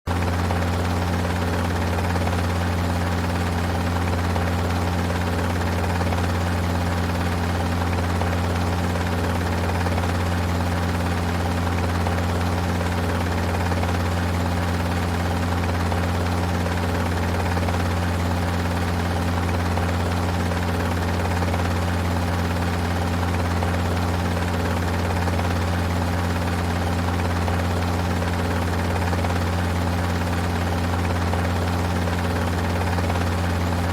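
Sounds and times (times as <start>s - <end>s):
helicopter engine and rotor drone: 0.1s - 33.9s.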